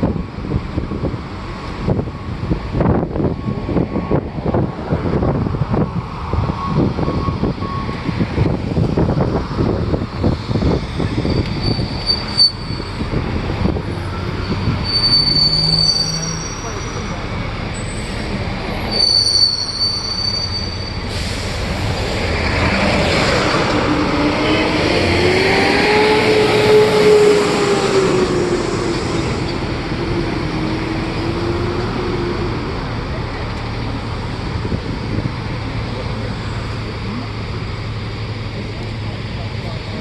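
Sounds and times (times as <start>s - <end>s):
bus engine: 0.0s - 40.0s
road traffic: 0.0s - 40.0s
high squeal: 9.8s - 24.5s.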